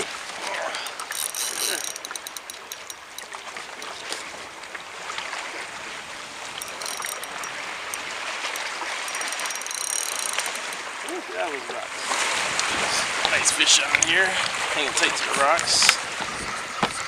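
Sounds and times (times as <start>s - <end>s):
water lapping against kayak: 0.0s - 17.0s
fishing reel clicking: 0.8s - 4.3s, 6.6s - 11.0s.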